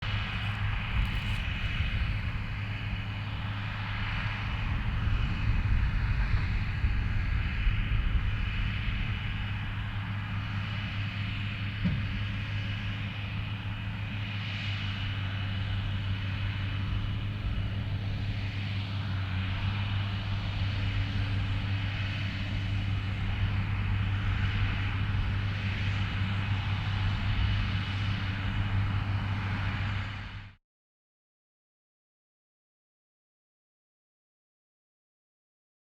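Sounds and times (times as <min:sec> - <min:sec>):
tractor engine under load: 0:00.0 - 0:04.8.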